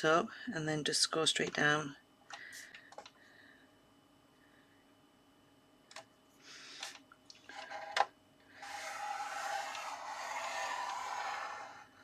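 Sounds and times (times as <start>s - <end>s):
short scrapes on card: 8.6s - 11.8s
scoring tool scraping along groove: 8.6s - 12.0s.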